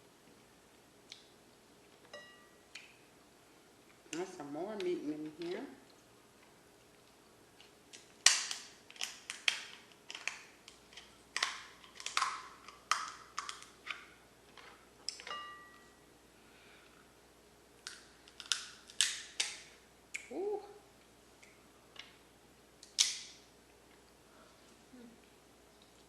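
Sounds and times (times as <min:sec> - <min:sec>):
shellfish shells cracking: 0:07.6 - 0:15.3, 0:17.8 - 0:19.7, 0:22.8 - 0:23.4.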